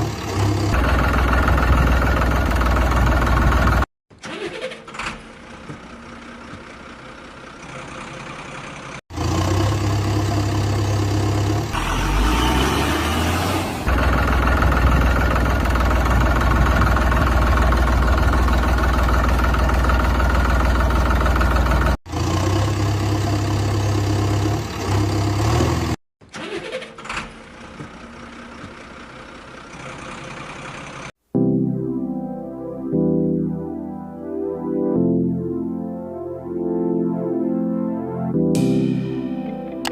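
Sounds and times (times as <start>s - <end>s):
diesel engine running: 0.0s - 3.9s, 5.2s - 26.0s, 27.4s - 31.1s.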